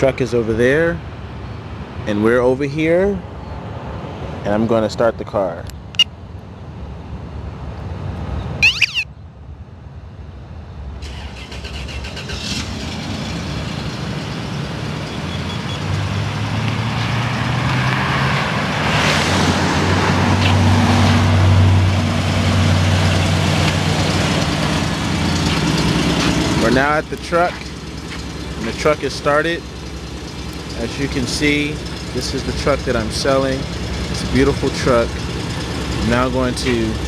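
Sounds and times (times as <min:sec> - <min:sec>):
electronic chirp: 0:08.6 - 0:09.1
car engine idling: 0:21.8 - 0:37.0.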